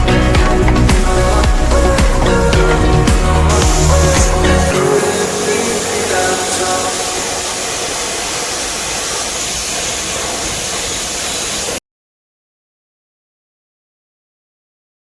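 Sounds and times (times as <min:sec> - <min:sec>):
steady rushing hiss: 0:00.0 - 0:11.8.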